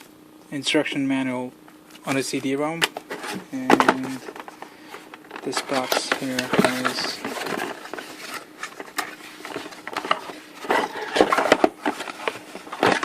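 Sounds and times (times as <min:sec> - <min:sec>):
cardboard box being handled: 0:05.4 - 0:13.0.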